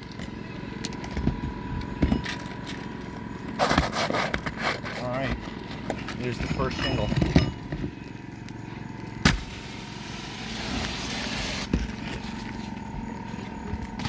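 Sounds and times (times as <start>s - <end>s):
steady background hum: 0.0s - 14.0s
scraping rustle: 3.5s - 8.0s, 9.5s - 14.0s.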